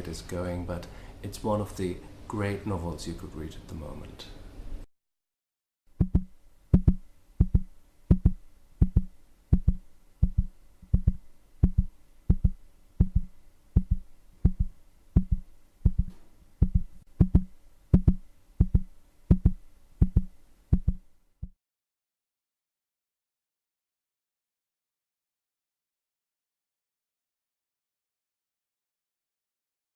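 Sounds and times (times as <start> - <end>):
electronic drum beat: 6.0 - 21.0.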